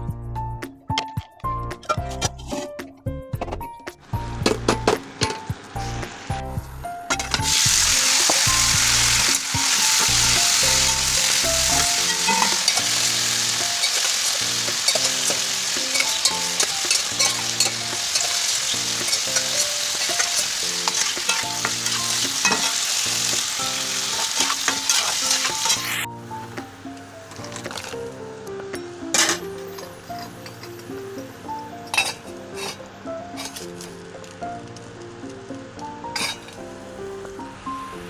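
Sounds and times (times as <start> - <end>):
food sizzling in a pan: 7.3 - 26.1.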